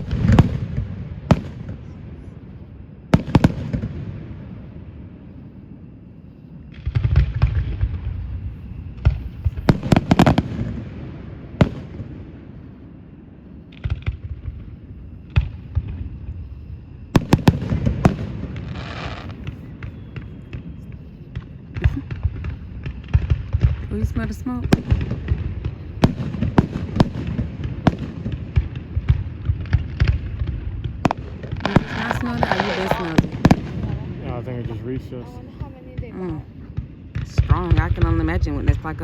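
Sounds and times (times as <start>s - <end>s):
fireworks booms and cracks: 0.0s - 2.4s, 3.0s - 5.6s, 6.6s - 39.0s.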